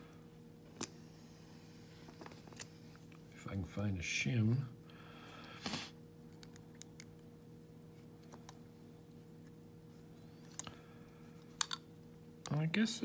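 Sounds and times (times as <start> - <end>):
steady low hum: 0.0 - 13.0
lock and tools clicking: 11.6 - 11.9.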